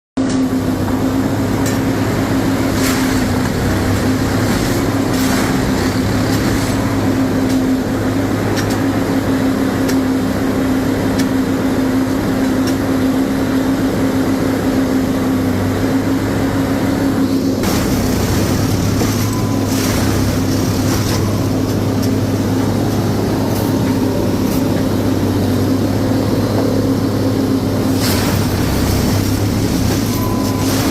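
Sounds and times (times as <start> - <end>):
track machine engine humming: 0.2 - 30.9
machine knocks and clanks: 1.6 - 7.8, 17.6 - 24.0, 27.9 - 30.9.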